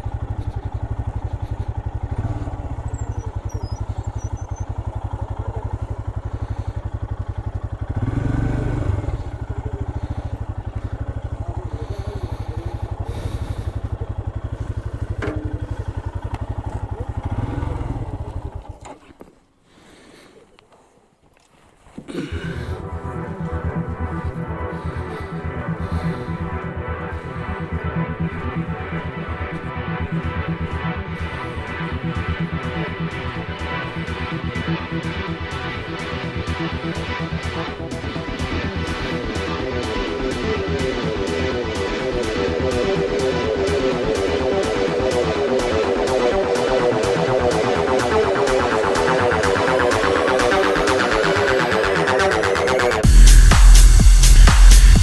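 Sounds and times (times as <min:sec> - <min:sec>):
synth music with pulsing beat: 0:00.0 - 0:06.6, 0:22.2 - 0:55.0
motorcycle engine thumping: 0:00.0 - 0:19.1.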